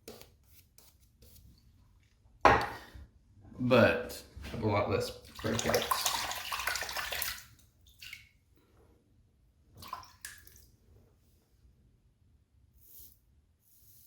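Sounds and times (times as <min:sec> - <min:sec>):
short water splashes: 0:05.2 - 0:08.4, 0:09.8 - 0:10.7
tap water running into sink: 0:05.3 - 0:07.5.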